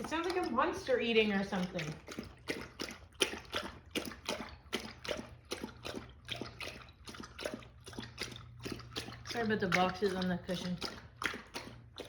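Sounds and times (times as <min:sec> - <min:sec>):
dog lapping and slurping food: 0:00.0 - 0:12.0.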